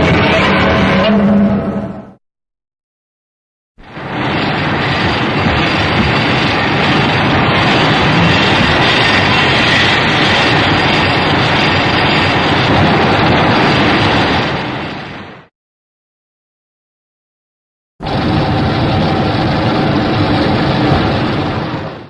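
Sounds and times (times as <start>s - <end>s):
dense rushing rumble: 3.8s - 15.5s, 18.0s - 22.0s.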